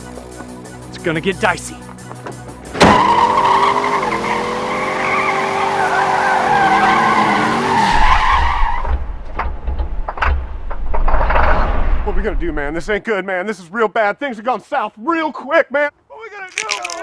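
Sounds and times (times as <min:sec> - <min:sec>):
car tyres screeching: 0:02.6 - 0:10.1.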